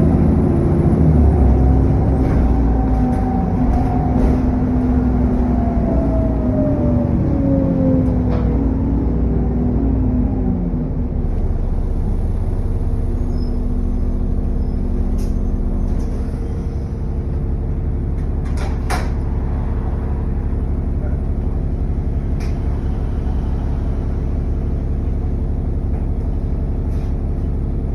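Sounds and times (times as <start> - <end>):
bus engine drone: 0.0 - 27.9.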